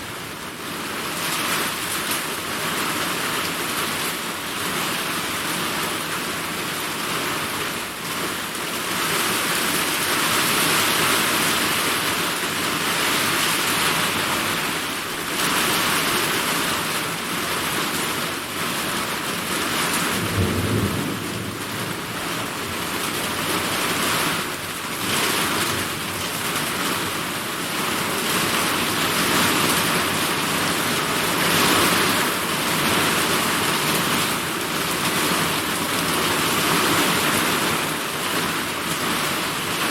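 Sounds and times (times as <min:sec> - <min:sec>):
heavy rain pouring: 0:00.0 - 0:39.9
low rumble of thunder: 0:20.0 - 0:24.3.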